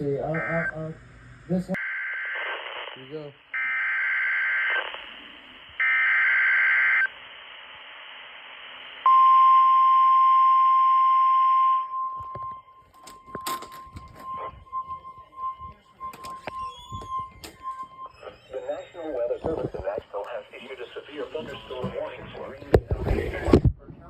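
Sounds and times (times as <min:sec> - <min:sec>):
steady warning alarm tone: 0:00.0 - 0:02.9, 0:03.5 - 0:07.1, 0:09.1 - 0:22.7
radio hiss: 0:00.0 - 0:03.6, 0:04.5 - 0:09.1, 0:14.2 - 0:23.8.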